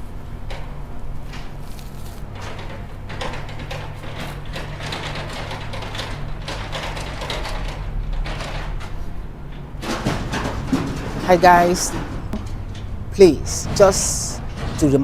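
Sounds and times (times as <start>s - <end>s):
machinery engine hum: 2.2s - 15.0s
metallic knocks and rattles: 2.4s - 15.0s.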